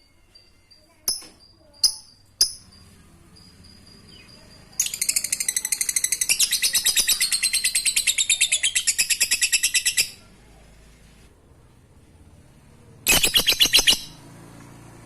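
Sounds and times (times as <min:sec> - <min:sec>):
lovebird chattering rattle: 0:00.4 - 0:10.2, 0:13.0 - 0:14.2.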